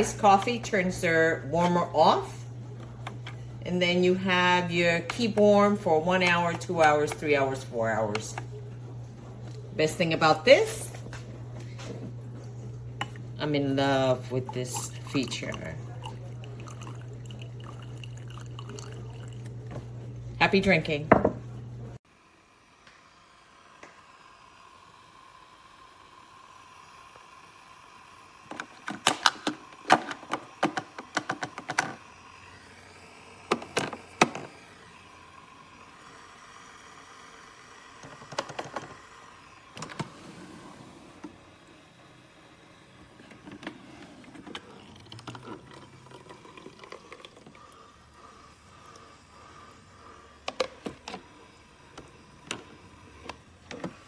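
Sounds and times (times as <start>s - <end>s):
faint steady hum: 0.0s - 54.0s
hard objects clicking and clattering: 28.5s - 32.0s.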